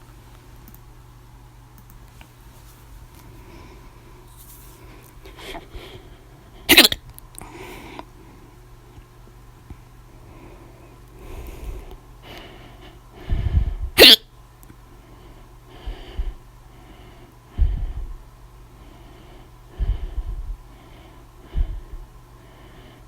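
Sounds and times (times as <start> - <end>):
steady low hum: 0.0 - 23.0
person hiccupping: 6.7 - 7.0, 14.0 - 14.2.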